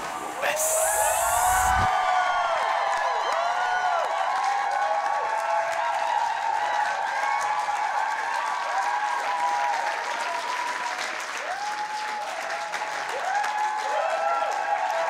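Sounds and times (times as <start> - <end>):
voices whooping: 0.0 - 4.0
crowd applauding: 0.0 - 15.0.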